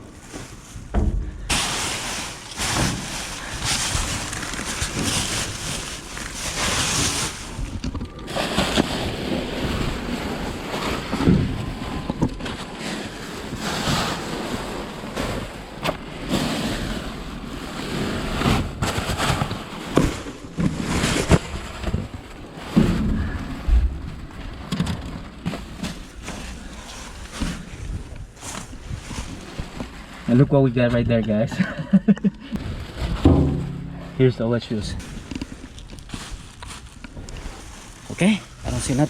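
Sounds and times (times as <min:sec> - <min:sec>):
plastic trash bags rustling: 0:00.0 - 0:30.4, 0:32.6 - 0:39.0
knocks and thumps: 0:00.8 - 0:01.8, 0:33.0 - 0:34.3.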